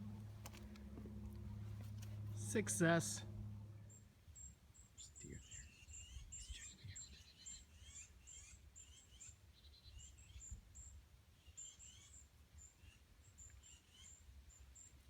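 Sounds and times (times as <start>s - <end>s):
low rumble: 0.0s - 4.2s
faint birds chirping: 0.0s - 15.0s.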